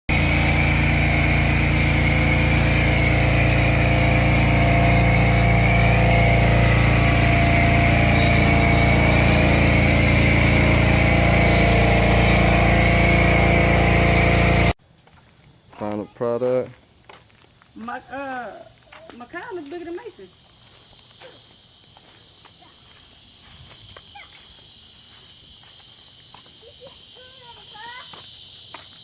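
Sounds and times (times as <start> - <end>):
small gasoline engine running: 0.1 - 14.8
wavering high whine: 1.3 - 14.8.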